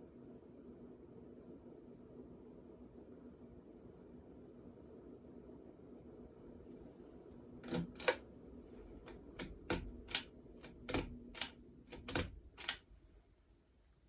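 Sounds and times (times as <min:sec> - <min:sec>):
ceiling fan motor humming: 0:00.0 - 0:14.0
sharp irregular clicks and taps: 0:07.6 - 0:08.2, 0:09.0 - 0:12.8.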